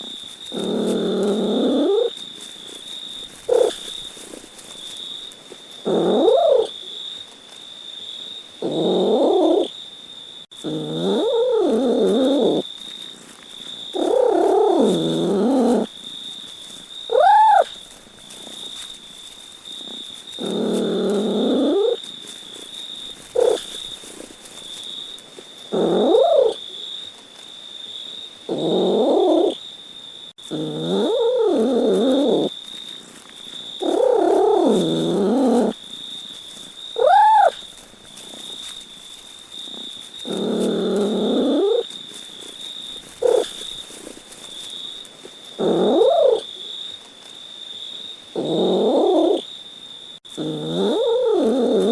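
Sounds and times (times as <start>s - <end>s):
cat meowing: 6.0s - 6.7s, 17.1s - 17.7s, 25.8s - 26.6s, 37.0s - 37.6s.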